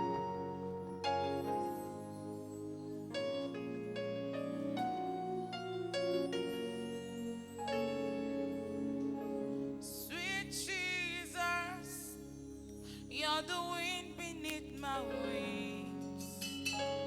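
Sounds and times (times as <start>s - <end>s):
held keyboard chords: 0.0s - 17.0s.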